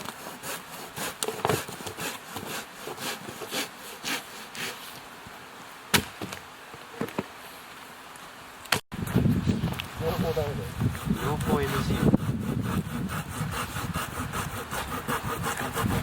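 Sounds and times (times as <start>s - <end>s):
hand saw cutting wood: 0.0s - 4.9s, 10.3s - 16.0s.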